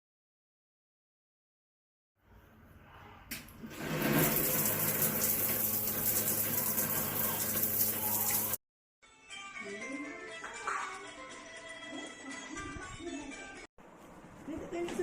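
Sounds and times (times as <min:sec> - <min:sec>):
running water rushing: 0:03.7 - 0:08.6.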